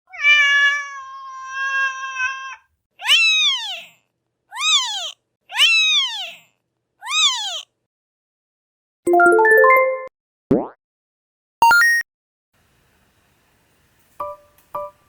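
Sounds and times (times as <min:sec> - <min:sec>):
cat meowing: 0:00.1 - 0:07.7.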